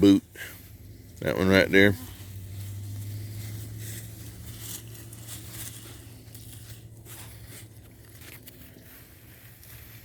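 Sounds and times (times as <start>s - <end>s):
scraping through mulch: 0.0s - 10.0s.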